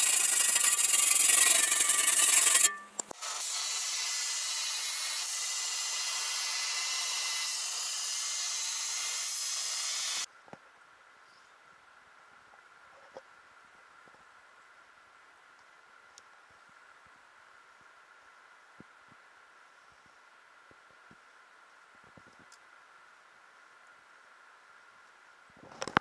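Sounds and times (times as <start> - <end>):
shovel edge being sharpened: 0.0 - 3.8
quiet steady hiss: 10.3 - 26.0.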